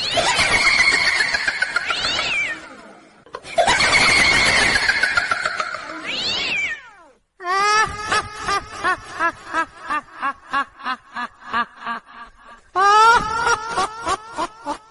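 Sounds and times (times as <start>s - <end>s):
ghostly laugh: 0.0s - 6.2s, 7.6s - 14.9s.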